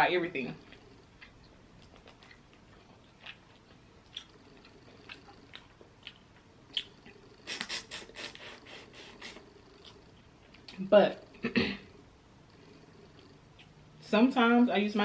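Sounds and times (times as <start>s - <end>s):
chewing and mouth smacks: 0.6s - 10.8s.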